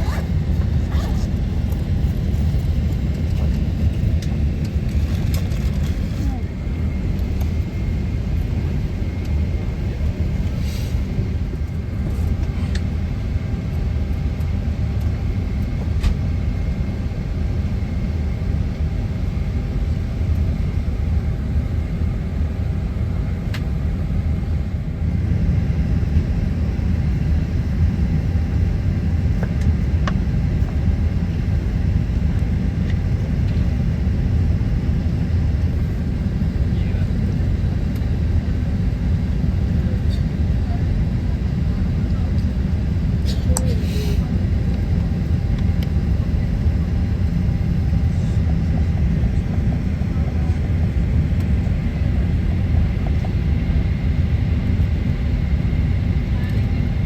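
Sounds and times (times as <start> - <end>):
vehicle cabin rumble: 0.0 - 14.4.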